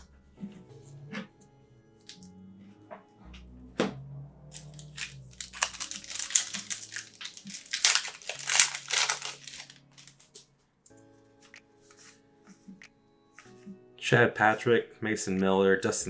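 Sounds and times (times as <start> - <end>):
card pack wrapper crinkling: 4.5 - 10.4.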